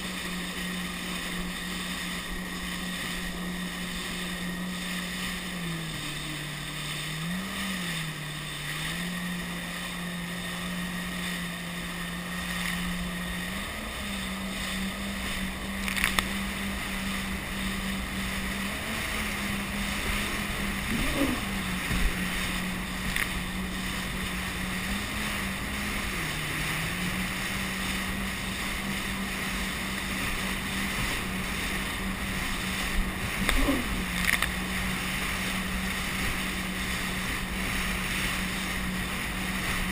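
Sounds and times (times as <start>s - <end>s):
jet ski engine: 0.0s - 39.9s
wind and water rushing: 0.0s - 39.9s.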